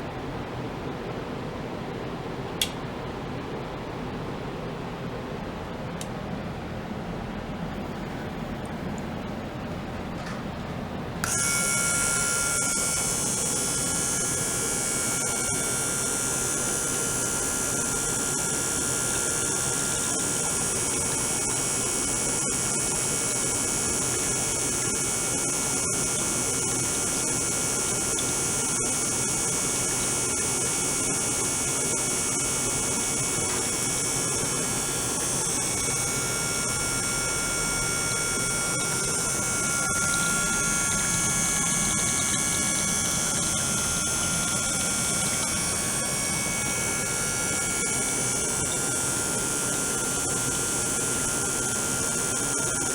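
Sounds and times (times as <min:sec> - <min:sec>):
water pump humming: 0:00.0 - 0:52.9
thin steady whining tones: 0:10.8 - 0:52.9.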